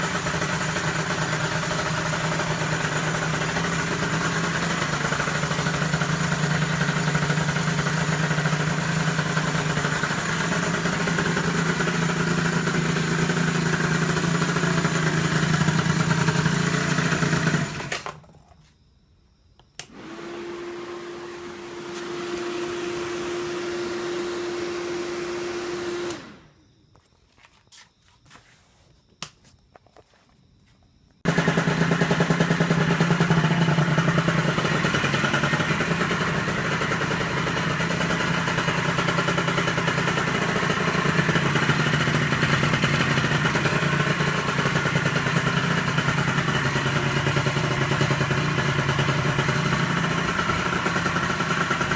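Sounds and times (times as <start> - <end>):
engine droning: 0.0 - 18.2, 31.2 - 51.9
click: 19.6 - 20.0.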